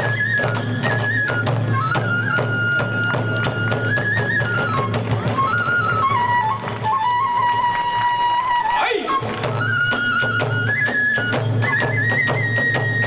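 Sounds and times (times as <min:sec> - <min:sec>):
bamboo flute melody: 0:00.0 - 0:13.0.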